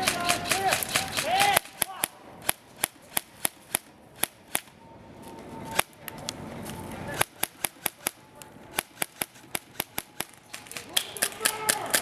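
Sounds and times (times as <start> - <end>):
airsoft gun shots: 0.0 - 4.7.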